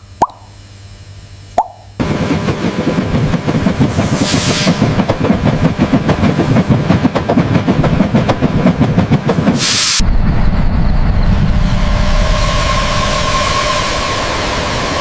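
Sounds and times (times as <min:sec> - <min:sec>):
steam locomotive clattering: 0:02.0 - 0:15.0
steam hiss: 0:04.0 - 0:04.9, 0:09.6 - 0:10.0
low rumble: 0:10.0 - 0:13.2.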